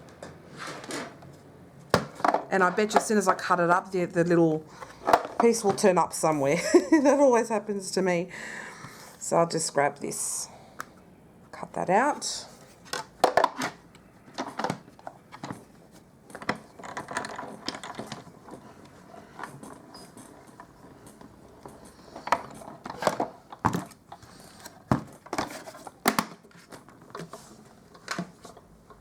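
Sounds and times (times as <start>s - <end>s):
clicks and knocks of handling: 12.8s - 29.0s.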